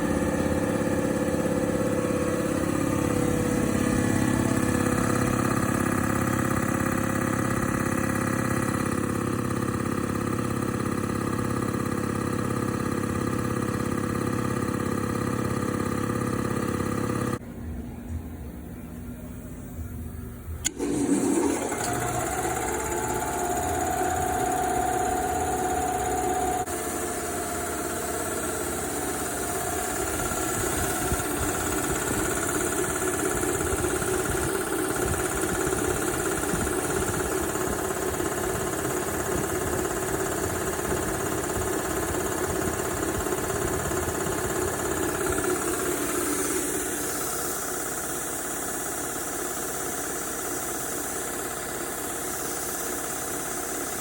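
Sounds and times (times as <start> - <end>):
steady whine: 0.0 - 9.6, 17.4 - 49.0
air compressor running: 0.0 - 17.5, 18.5 - 54.0.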